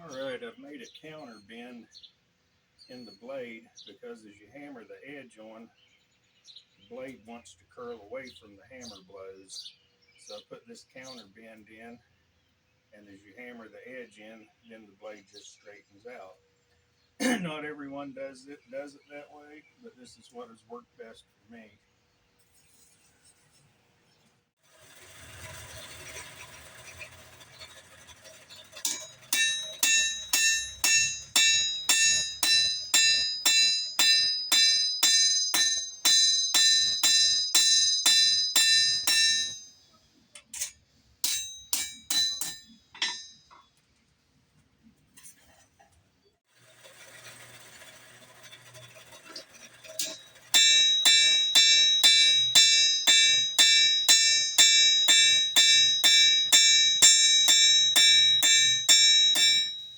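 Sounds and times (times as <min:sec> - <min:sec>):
hammer striking blade on anvil: 0:28.7 - 0:39.8, 0:40.6 - 0:43.6, 0:50.0 - 0:59.9.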